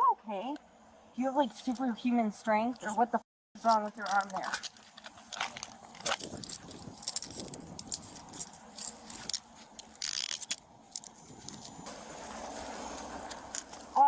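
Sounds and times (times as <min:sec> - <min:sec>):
rustling and scuffling: 0:03.6 - 0:14.0
handcuffs clicking and jangling: 0:03.7 - 0:11.9
loud scrape: 0:06.1 - 0:14.0.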